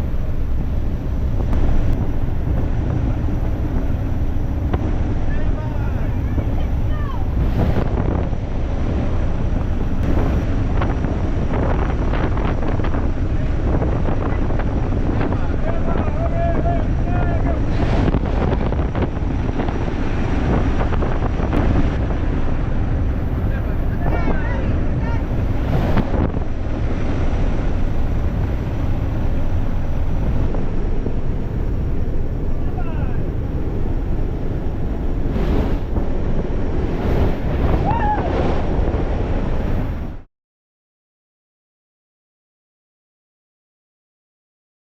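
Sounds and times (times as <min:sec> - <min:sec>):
wind buffeting on microphone: 0:00.0 - 0:40.3
aircraft cabin engine noise: 0:16.7 - 0:40.3.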